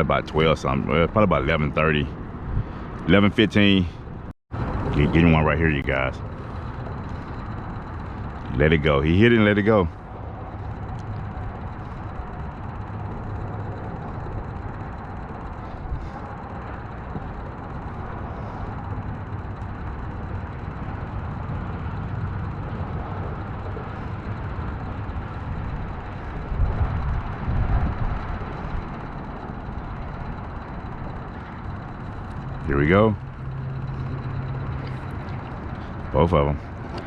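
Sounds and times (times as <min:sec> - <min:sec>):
boat motor droning: 0:00.0 - 0:37.0
wind on microphone: 0:10.3 - 0:29.4.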